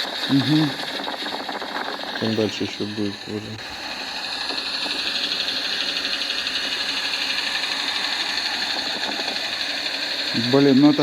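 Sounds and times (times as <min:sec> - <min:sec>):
rapid engine knock: 0:04.3 - 0:11.0.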